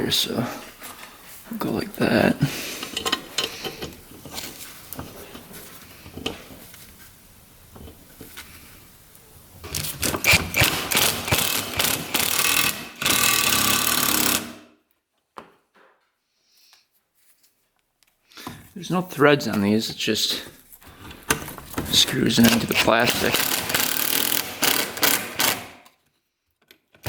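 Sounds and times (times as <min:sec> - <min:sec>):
power driver driving screws: 0:09.6 - 0:14.7, 0:22.4 - 0:25.9.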